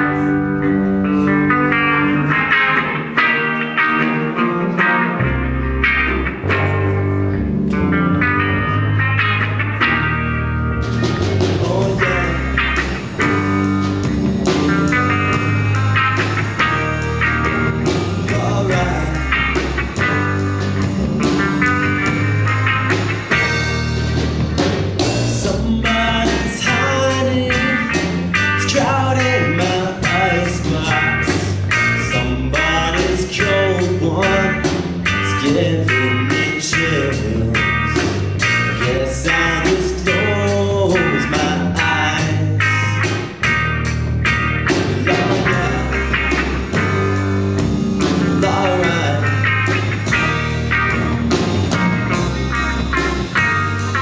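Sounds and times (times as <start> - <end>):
bass guitar: 0.0 - 54.0
electric guitar: 0.0 - 54.0
steady drumbeat: 10.8 - 54.0.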